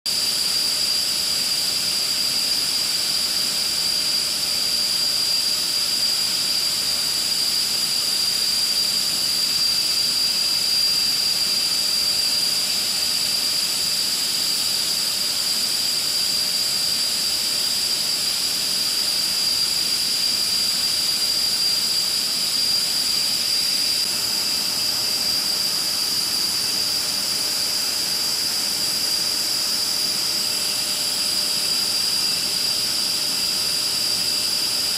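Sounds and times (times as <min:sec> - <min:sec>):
jet engines running: 0:12.5 - 0:34.9.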